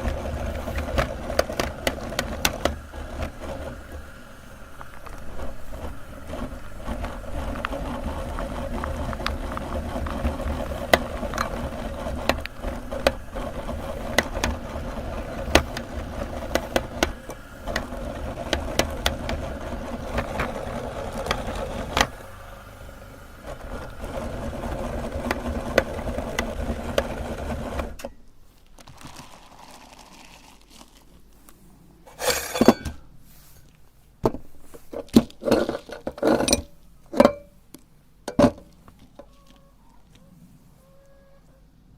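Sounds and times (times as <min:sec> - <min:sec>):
electric meat grinder humming: 0:00.0 - 0:28.0
grinder crackling and clicking: 0:00.0 - 0:28.0.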